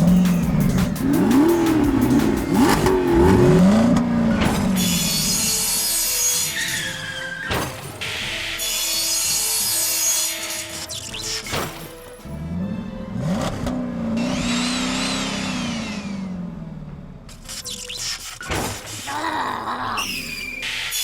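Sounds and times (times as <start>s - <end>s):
background music: 0.0s - 14.6s.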